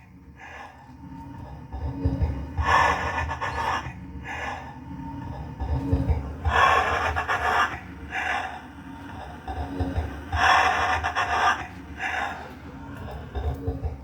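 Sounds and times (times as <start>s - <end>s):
breathy gasp-like voice sounds: 10.3s - 14.0s.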